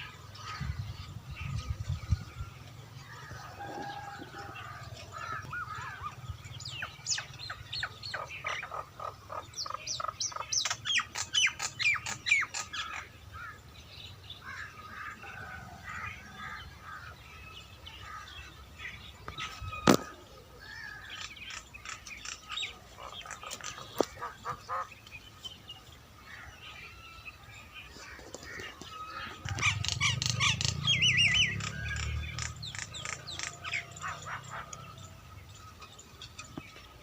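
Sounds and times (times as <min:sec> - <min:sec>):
birds chirping: 0:00.0 - 0:37.0.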